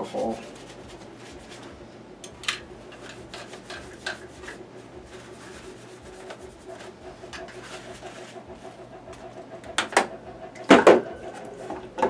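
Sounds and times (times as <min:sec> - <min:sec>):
rag rubbing a surface: 0:00.0 - 0:01.8, 0:03.0 - 0:09.6.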